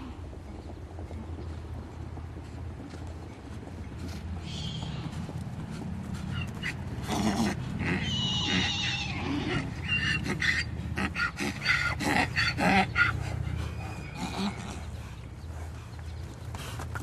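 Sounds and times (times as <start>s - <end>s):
hooves striking ground: 0.0s - 17.0s
horse calls: 4.4s - 15.2s.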